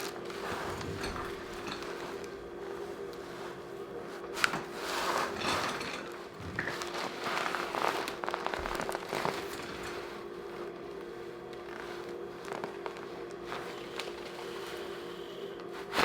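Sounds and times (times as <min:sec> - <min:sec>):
handling and rustling on table: 0:00.0 - 0:16.0
steady low hum: 0:00.0 - 0:16.0
small crackles: 0:04.2 - 0:15.0.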